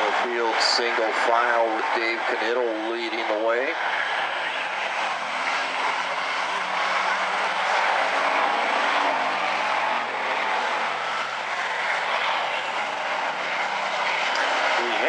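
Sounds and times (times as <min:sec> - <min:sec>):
race car engines droning: 0:00.0 - 0:15.0.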